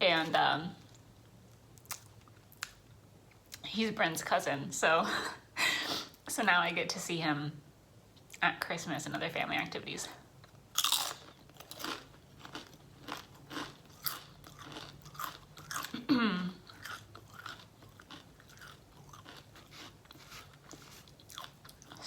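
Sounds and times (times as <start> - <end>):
chewing crunchy food: 0.2 - 3.6, 10.4 - 22.0.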